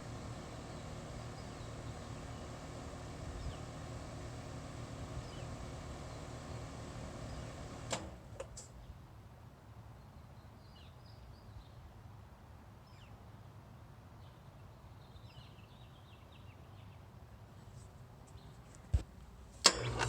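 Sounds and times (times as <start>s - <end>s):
low machine hum: 0.0s - 8.6s, 19.5s - 20.0s
click: 7.9s - 8.7s.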